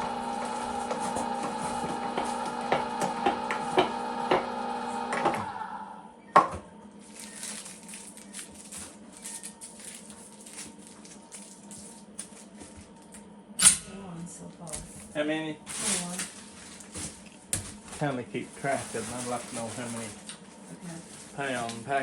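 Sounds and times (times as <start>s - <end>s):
electric meat grinder running: 0.0s - 6.0s
handling and rustling: 7.0s - 13.0s, 14.8s - 22.0s.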